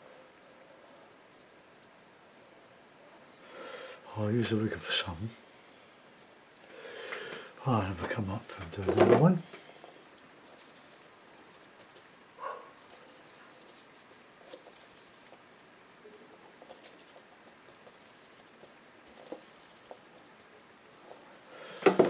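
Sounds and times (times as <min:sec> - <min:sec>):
brush scratching on paper: 0:10.4 - 0:21.5.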